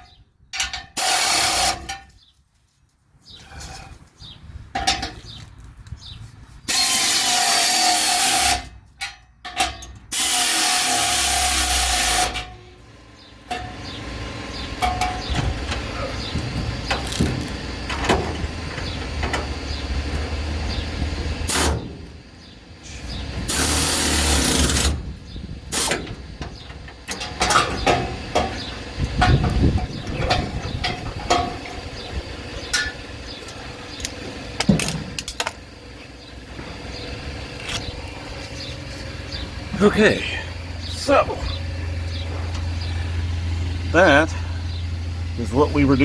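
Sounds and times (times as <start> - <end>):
steady low hum: 11.7 - 46.0.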